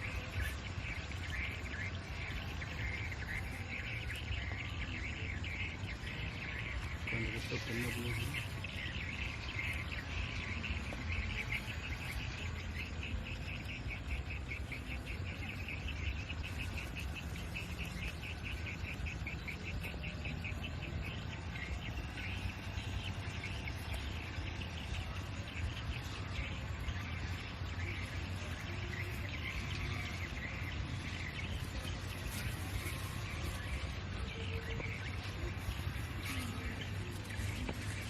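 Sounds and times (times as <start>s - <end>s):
insects chirping in pulsing trill: 0.0s - 38.0s.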